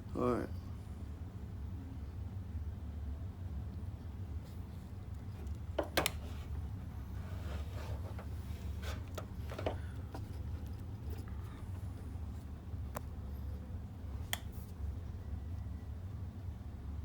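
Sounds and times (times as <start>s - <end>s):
steady low hum: 0.0s - 17.0s
hands handling wiring and tools: 7.5s - 11.3s.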